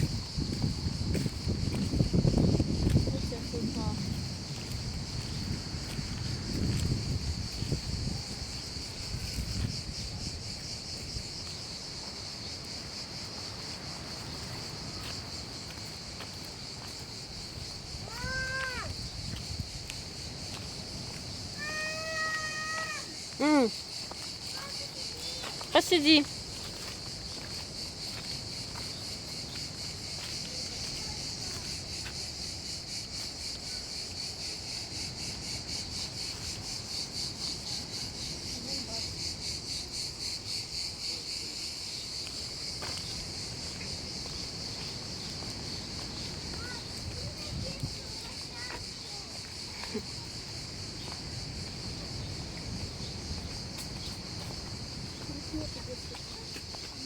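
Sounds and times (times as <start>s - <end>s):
wind rumble on microphone: 0.0s - 12.0s, 16.6s - 21.6s, 42.6s - 48.5s, 50.5s - 56.4s
insects chirring: 0.0s - 57.0s.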